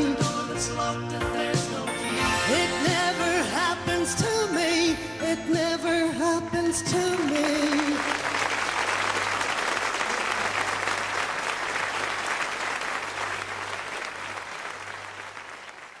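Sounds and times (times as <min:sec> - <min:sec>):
audience applauding: 0:07.1 - 0:16.0.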